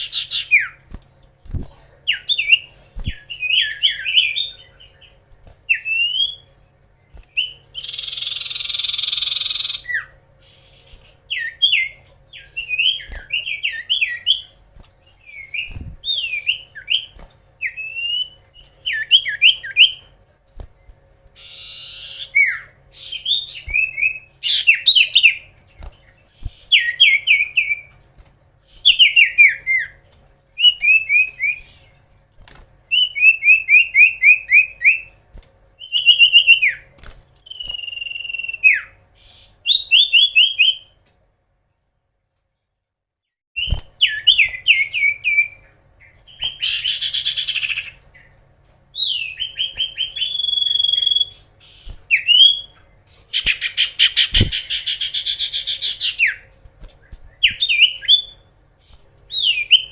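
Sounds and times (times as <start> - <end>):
bird whistling song: 0.0 - 0.8, 2.1 - 5.1, 5.7 - 6.6, 7.2 - 20.0, 21.4 - 25.5, 26.5 - 27.9, 28.8 - 30.0, 30.6 - 31.9, 32.9 - 35.2, 35.8 - 41.0, 43.6 - 48.3, 49.0 - 58.5, 59.3 - 59.9
long held bird whistle: 37.5 - 38.9, 49.0 - 51.4.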